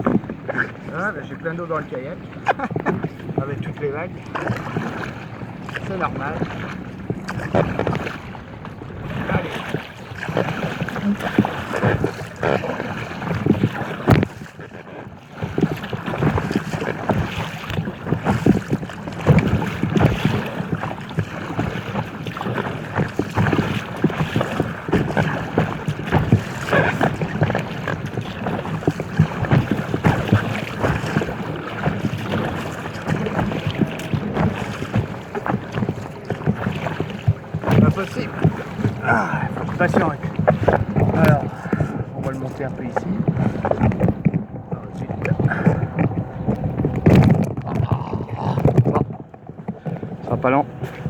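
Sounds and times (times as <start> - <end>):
water splashing against kayak: 0.0 - 51.0.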